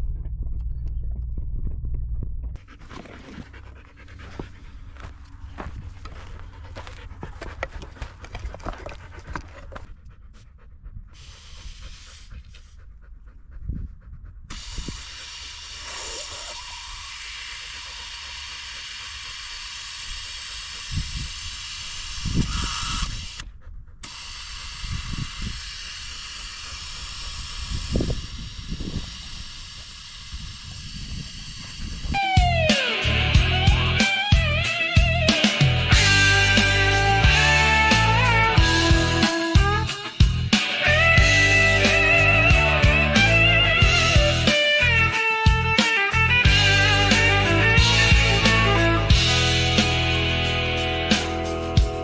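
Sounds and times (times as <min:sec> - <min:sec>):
dog panting: 0:02.6 - 0:16.6, 0:23.4 - 0:24.1.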